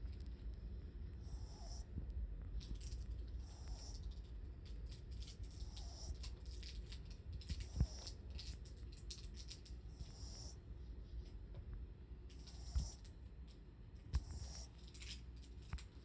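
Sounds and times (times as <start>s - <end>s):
dog snoring softly: 1.1s - 2.0s, 3.3s - 4.2s, 5.4s - 6.5s, 7.5s - 8.2s, 9.9s - 10.6s, 12.4s - 13.0s, 14.2s - 14.8s.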